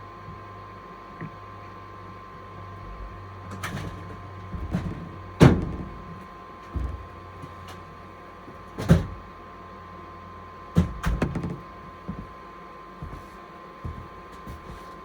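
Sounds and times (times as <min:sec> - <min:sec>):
air heater humming and whining: 0:00.0 - 0:15.0
knocks and thumps: 0:03.7 - 0:07.6, 0:08.8 - 0:09.2, 0:10.8 - 0:12.3.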